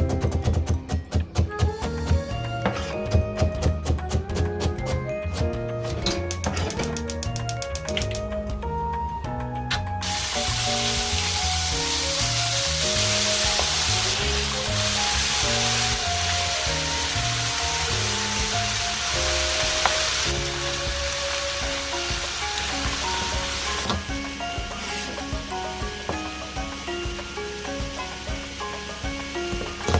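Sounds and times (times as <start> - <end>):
background music: 0.0 - 29.9
food sizzling in hot oil: 10.0 - 29.9.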